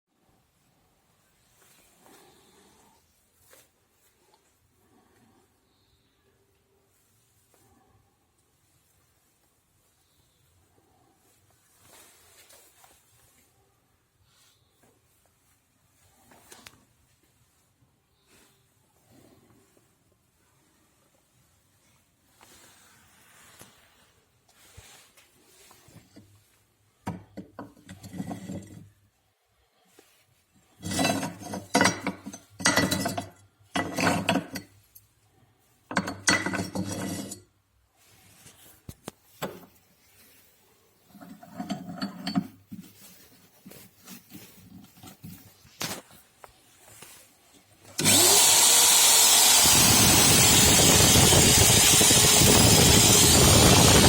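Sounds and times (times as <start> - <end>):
rubbing and scraping on metal: 22.4 - 29.1, 30.0 - 35.0, 35.7 - 46.2
electric drill motor running: 48.0 - 54.0.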